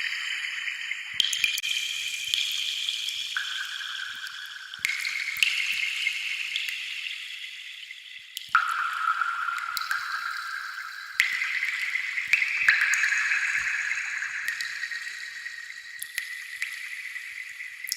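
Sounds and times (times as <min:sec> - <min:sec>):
water dripping and trickling: 0:00.0 - 0:17.9
drip clicks: 0:08.3 - 0:17.9.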